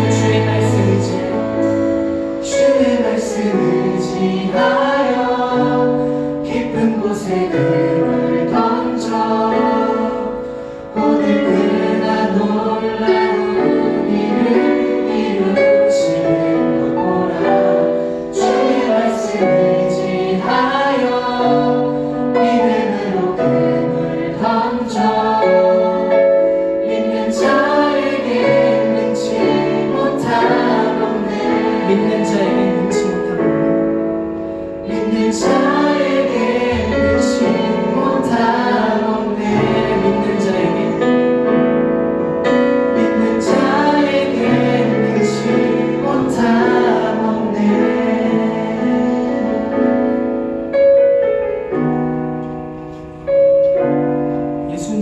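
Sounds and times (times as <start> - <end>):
choir singing worship song: 0.0 - 51.0
musical accompaniment: 0.0 - 55.0.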